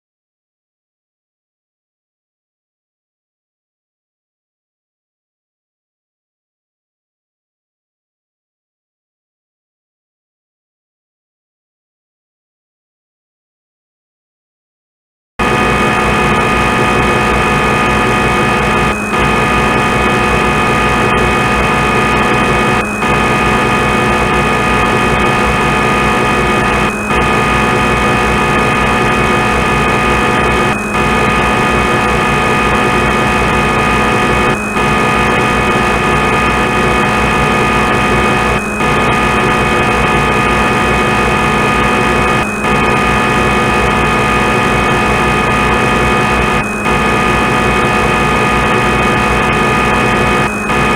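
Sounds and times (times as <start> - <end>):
lathe machining drone: 15.4 - 50.9.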